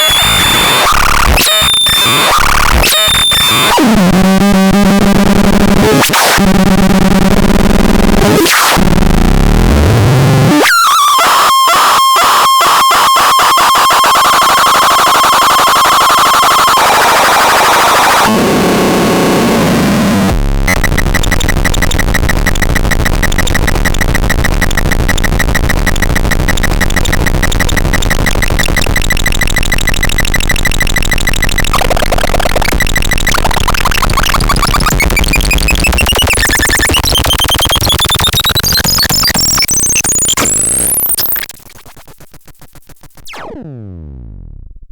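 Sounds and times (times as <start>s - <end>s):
buzzing electronic drone: 13.9s - 44.7s.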